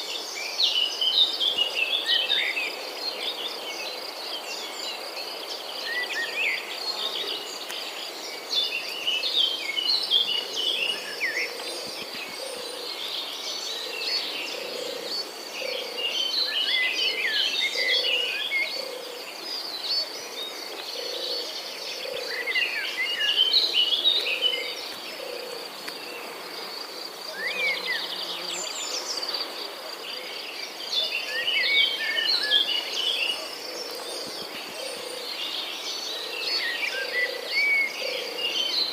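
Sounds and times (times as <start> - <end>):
songbird chirping: 0.0 - 38.9.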